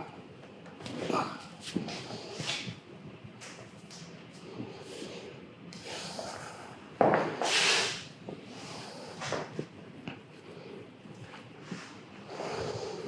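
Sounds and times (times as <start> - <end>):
person breathing heavily through nose: 4.4 - 9.4, 11.7 - 13.0.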